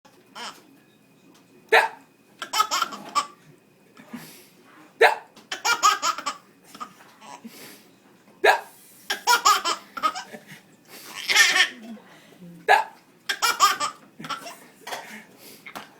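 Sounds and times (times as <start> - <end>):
baby belly laughter: 2.4 - 3.4, 5.5 - 7.4, 9.1 - 10.4, 11.2 - 11.7, 13.3 - 14.6.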